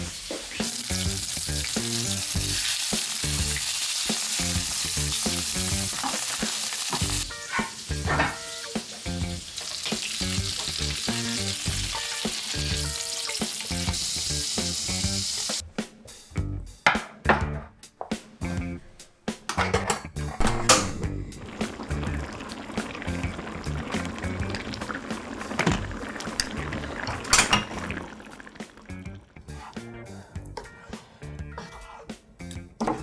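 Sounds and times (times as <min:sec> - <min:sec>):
food sizzling in a pan: 0:00.0 - 0:15.6, 0:21.4 - 0:29.7
light background music: 0:06.6 - 0:28.1, 0:29.0 - 0:33.0.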